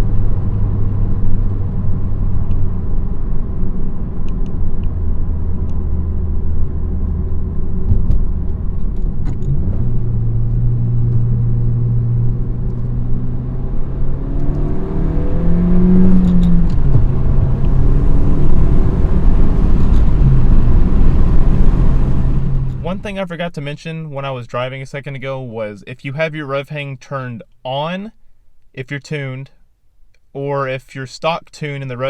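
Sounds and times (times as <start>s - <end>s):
car engine accelerating: 0.0s - 23.2s.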